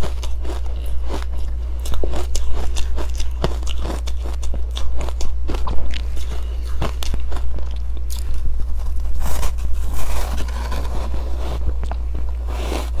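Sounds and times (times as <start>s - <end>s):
crunchy ice chewing: 0.0s - 13.0s.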